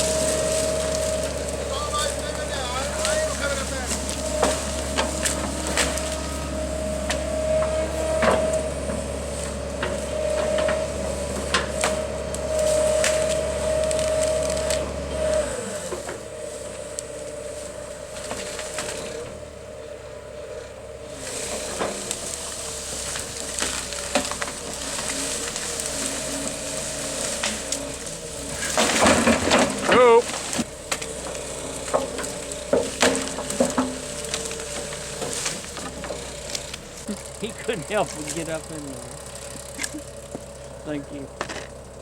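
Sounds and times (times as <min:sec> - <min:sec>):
wood cracking and snapping: 0:00.0 - 0:06.4, 0:09.5 - 0:17.3, 0:21.3 - 0:40.5
machine engine whining: 0:00.0 - 0:42.0.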